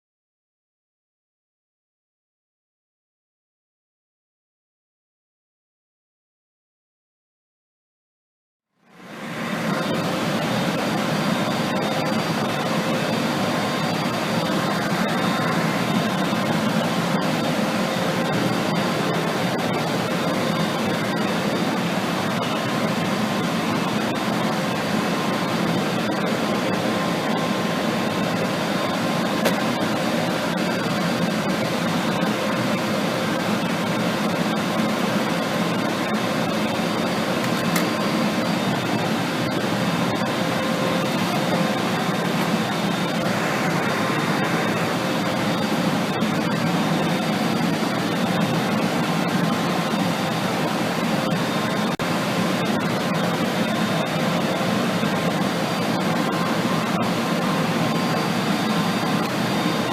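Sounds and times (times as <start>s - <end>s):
faint steady tones: 8.8s - 59.9s
cooling fans humming: 9.0s - 59.9s.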